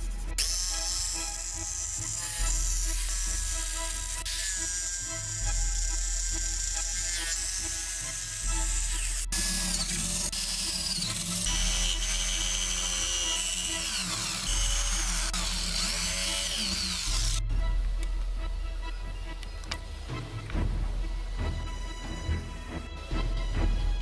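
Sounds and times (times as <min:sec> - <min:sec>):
power tool motor whining: 0:00.4 - 0:17.4
background music with pulsing bass: 0:16.8 - 0:24.0.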